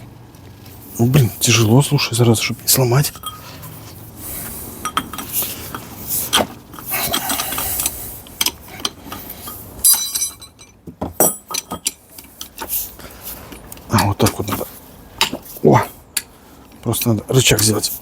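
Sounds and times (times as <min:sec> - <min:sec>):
metal tools clinking on steel: 0:01.2 - 0:03.8, 0:04.8 - 0:12.9
ringing metallic clank: 0:09.5 - 0:12.0.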